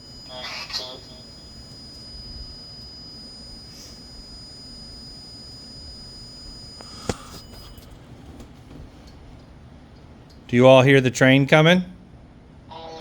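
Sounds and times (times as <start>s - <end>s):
high-pitched electronic whine: 0.0s - 8.2s.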